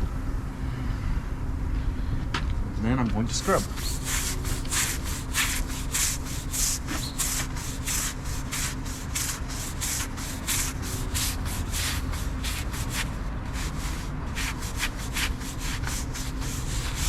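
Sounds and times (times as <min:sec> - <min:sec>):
brush scrubbing brick wall: 0:03.4 - 0:17.0.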